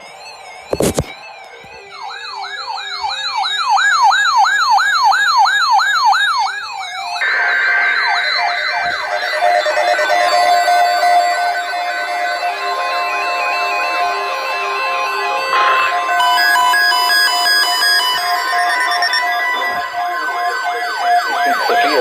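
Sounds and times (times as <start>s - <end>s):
electronic siren yelping: 0.0s - 22.0s
harsh steady buzz: 6.4s - 22.0s.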